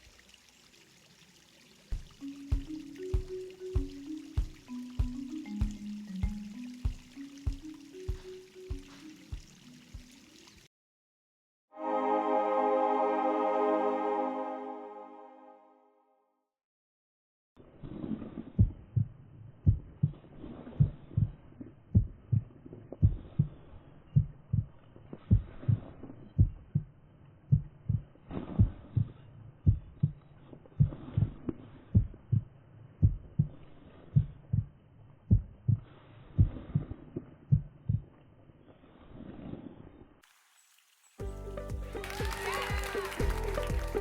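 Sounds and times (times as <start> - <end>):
heartbeat thuds: 1.9 - 10.1, 18.6 - 20.2, 20.8 - 23.6, 24.2 - 26.9, 27.5 - 30.2, 30.8 - 33.6, 34.2 - 34.7, 35.3 - 38.1.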